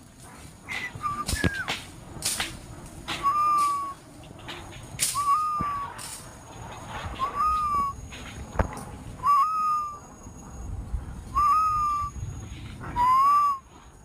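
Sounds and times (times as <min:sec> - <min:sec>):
whistled call: 0:00.7 - 0:01.8, 0:03.1 - 0:04.0, 0:05.0 - 0:06.0, 0:07.1 - 0:08.3, 0:09.2 - 0:10.6, 0:11.3 - 0:13.9.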